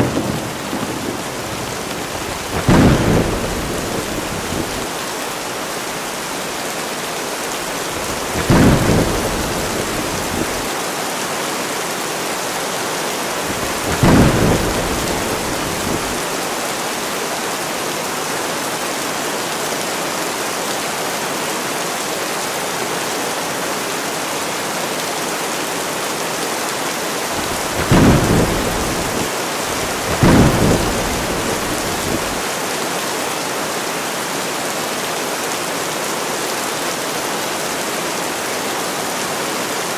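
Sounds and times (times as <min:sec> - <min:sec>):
thunderclaps rumbling: 0:00.0 - 0:06.5, 0:07.5 - 0:10.8, 0:13.4 - 0:16.5, 0:27.3 - 0:32.4
heavy rain hissing: 0:00.0 - 0:22.8, 0:24.6 - 0:39.9.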